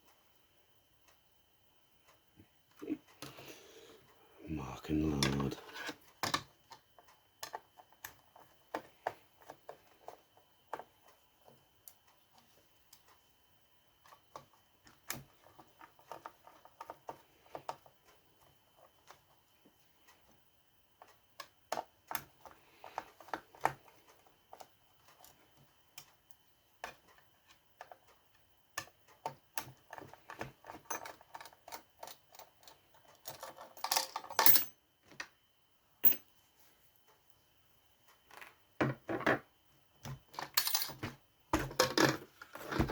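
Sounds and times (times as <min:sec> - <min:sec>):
hand tools clicking and tapping: 0:28.8 - 0:35.3, 0:36.0 - 0:36.2.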